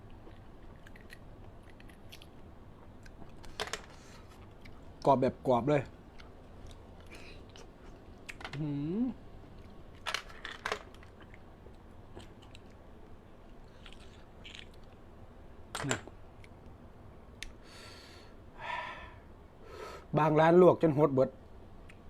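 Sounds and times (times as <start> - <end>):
quiet chewing with mouth smacks: 0.0 - 3.4, 4.2 - 5.1, 6.1 - 8.4, 11.1 - 12.8, 13.5 - 15.0.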